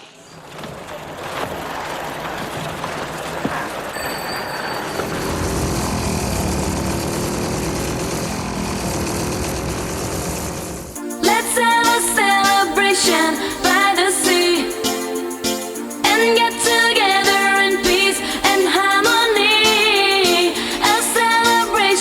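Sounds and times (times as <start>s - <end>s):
dance-pop music: 11.0s - 22.0s.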